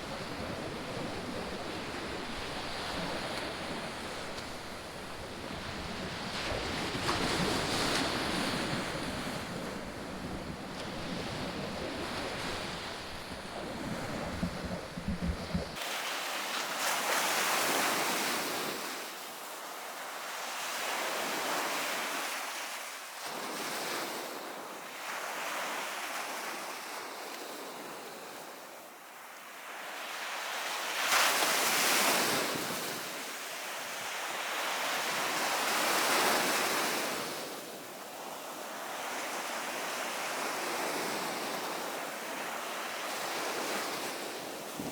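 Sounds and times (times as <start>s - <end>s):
wind rumble on microphone: 0.0s - 15.8s, 43.7s - 44.9s
sea waves breaking: 0.0s - 18.2s.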